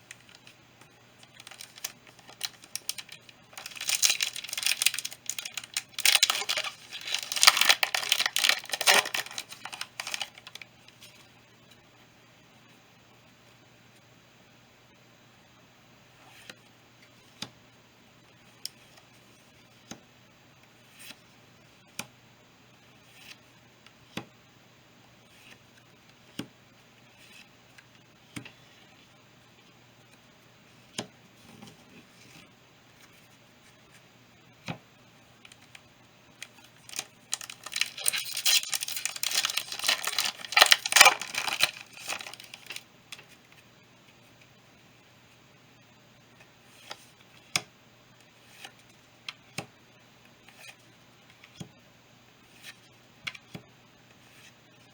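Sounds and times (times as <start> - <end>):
foil pack tearing and crinkling: 1.4 - 10.6, 36.8 - 42.8.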